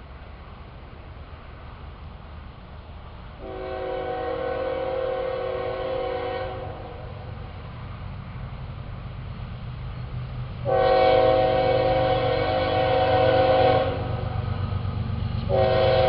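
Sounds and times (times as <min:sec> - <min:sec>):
train rumbling: 0:00.0 - 0:16.0
locomotive air horn: 0:03.4 - 0:07.1, 0:10.6 - 0:14.3, 0:15.5 - 0:16.0.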